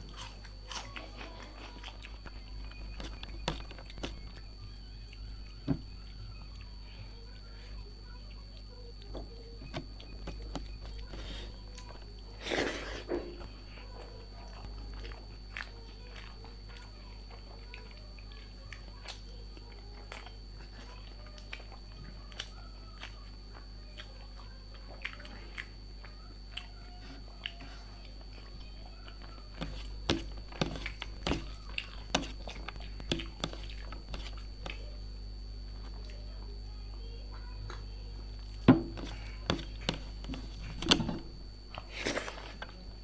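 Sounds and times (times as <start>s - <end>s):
person chewing: 0.0s - 5.6s, 18.7s - 36.1s.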